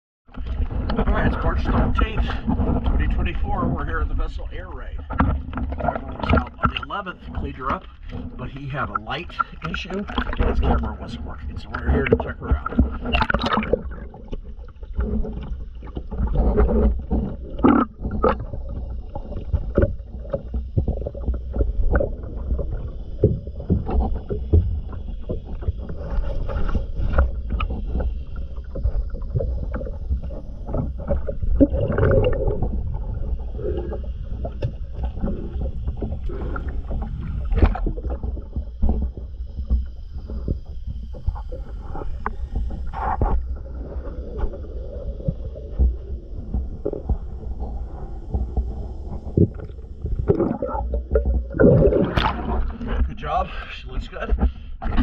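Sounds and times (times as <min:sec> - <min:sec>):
crackling clicks: 0:00.3 - 0:53.3
low underwater rumble: 0:00.3 - 0:55.0
regulator exhaust bubbles: 0:00.3 - 0:55.0.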